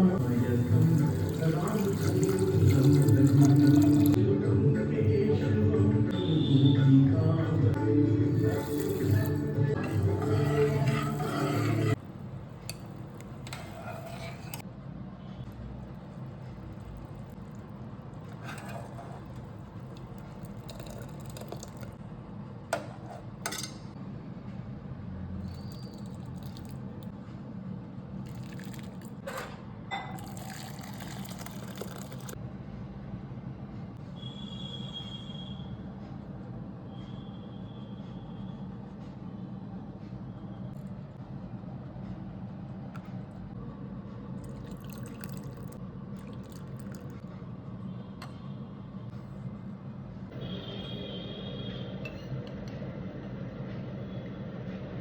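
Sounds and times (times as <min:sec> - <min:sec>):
light scrapes and rattles: 0:08.4 - 0:12.0, 0:12.7 - 0:14.6, 0:18.2 - 0:19.6.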